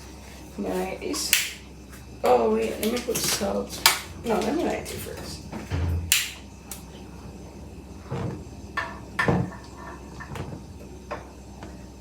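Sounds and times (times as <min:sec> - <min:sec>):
pots knocking and thumping: 0:08.1 - 0:11.3.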